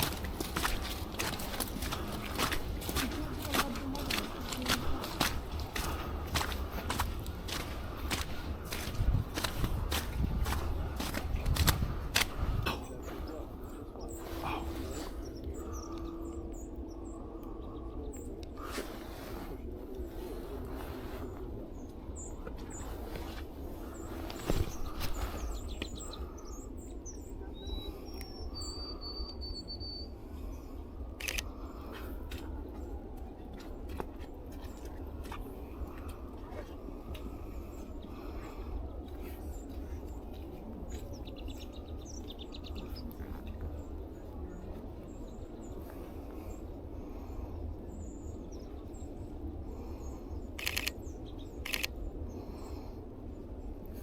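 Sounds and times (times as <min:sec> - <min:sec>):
low background noise: 0:00.0 - 0:54.0
songbirds chirping: 0:00.0 - 0:54.0
thin whistled bird notes: 0:24.0 - 0:30.2.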